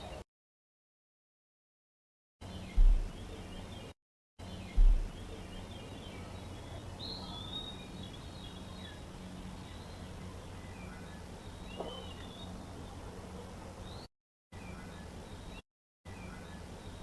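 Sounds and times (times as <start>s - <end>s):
faint bird chirps and whistles: 2.4s - 10.0s, 10.6s - 12.6s
low woodland night hum: 2.4s - 17.0s.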